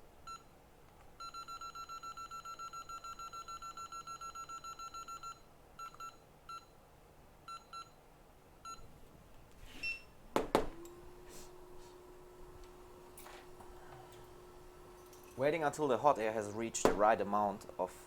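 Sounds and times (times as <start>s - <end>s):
hot air blower humming: 10.5s - 18.0s.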